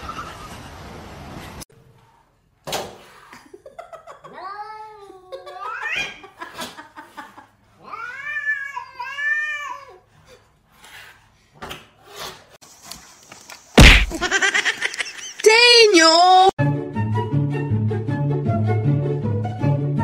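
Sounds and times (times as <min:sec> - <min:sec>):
loud sharp thump: 0:13.8 - 0:14.2.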